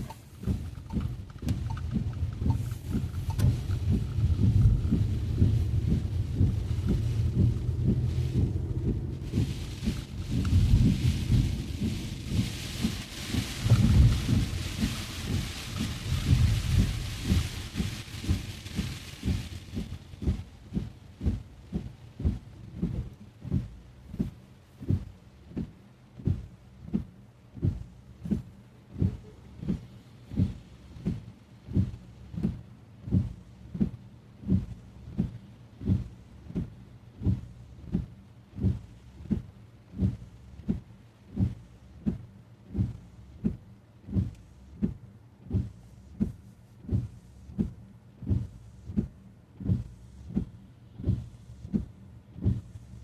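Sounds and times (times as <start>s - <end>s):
rain on car: 0.0s - 53.0s
windscreen wipers thumping: 0.0s - 53.0s.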